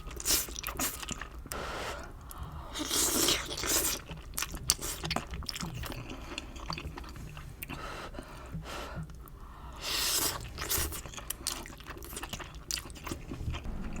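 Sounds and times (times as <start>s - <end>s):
person chewing food: 10.3s - 13.7s.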